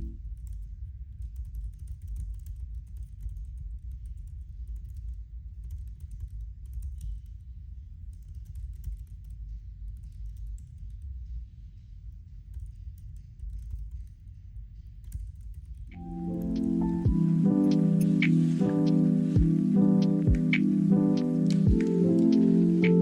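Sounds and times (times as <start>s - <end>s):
laptop keyboard typing: 0.0s - 7.2s, 15.0s - 23.0s.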